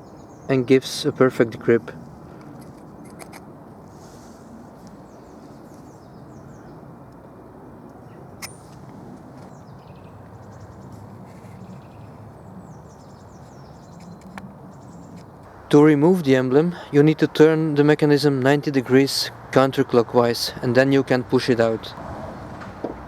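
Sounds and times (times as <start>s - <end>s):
small birds chirping: 0.0s - 15.6s
outdoor background hum: 0.0s - 23.0s.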